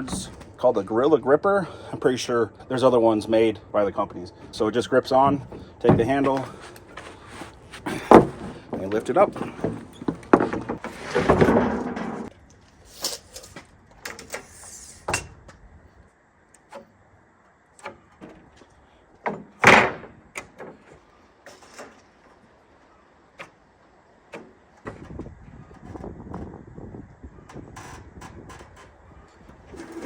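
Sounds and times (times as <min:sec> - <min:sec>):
board knocking and scraping: 0:05.2 - 0:12.3
loud scraping thump: 0:05.3 - 0:12.3.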